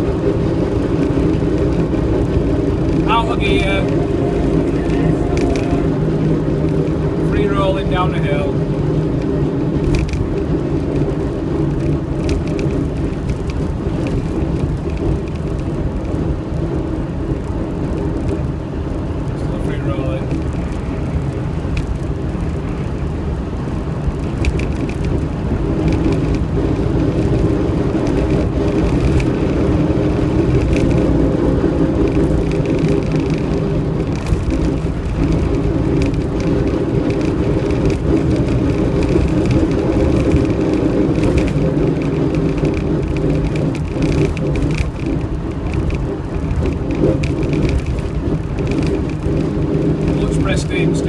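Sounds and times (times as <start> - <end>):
high whine: 0.0 - 8.8
vehicle drone: 0.0 - 51.0.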